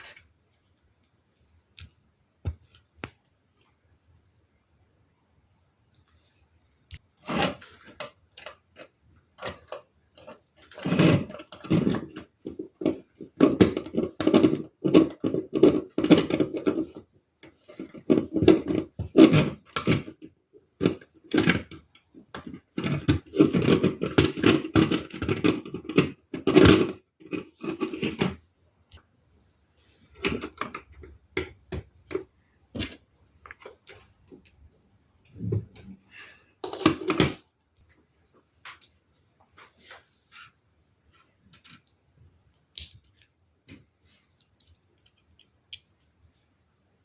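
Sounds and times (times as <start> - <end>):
plastic pieces clattering and clicking: 7.3 - 28.4, 42.7 - 43.3, 44.3 - 46.1.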